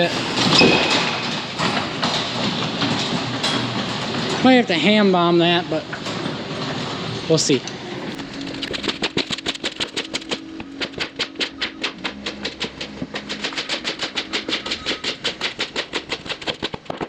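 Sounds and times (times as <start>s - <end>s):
farm machine humming: 0.0s - 17.0s
rapid even clicking clatter: 8.1s - 17.0s.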